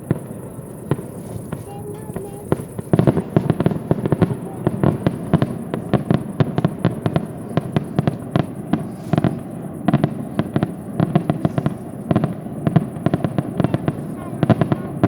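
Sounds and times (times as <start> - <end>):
fireworks bangs: 0.0 - 15.0
fireworks crackling: 0.0 - 15.0.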